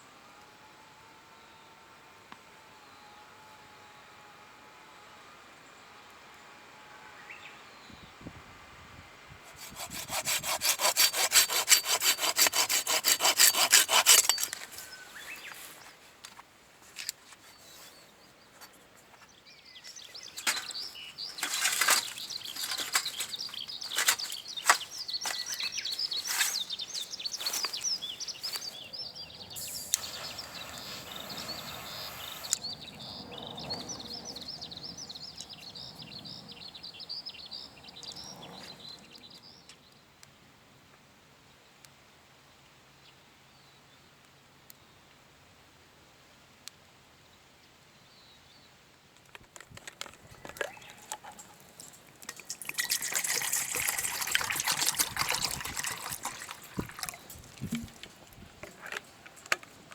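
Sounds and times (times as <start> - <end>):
saw cutting through log: 9.4 - 14.8, 21.3 - 26.6.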